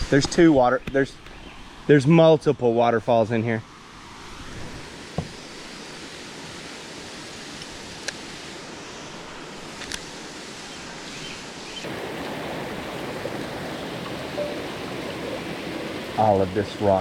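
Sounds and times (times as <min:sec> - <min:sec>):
light clicks: 0:09.8 - 0:10.1
waterfalls rushing over rock: 0:11.8 - 0:17.0.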